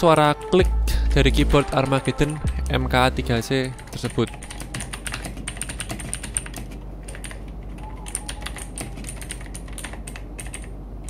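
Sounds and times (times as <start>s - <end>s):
mechanical keyboard typing clicks: 3.9s - 10.7s.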